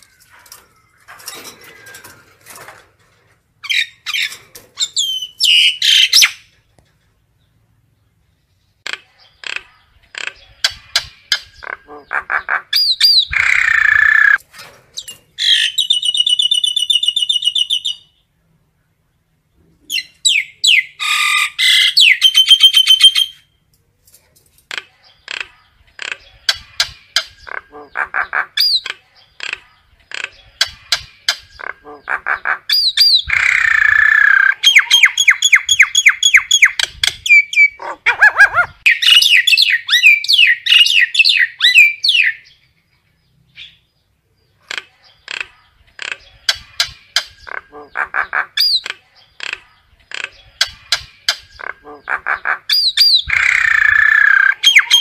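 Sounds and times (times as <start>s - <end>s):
myna calling: 8.8s - 14.4s, 24.7s - 42.4s, 44.6s - 55.0s.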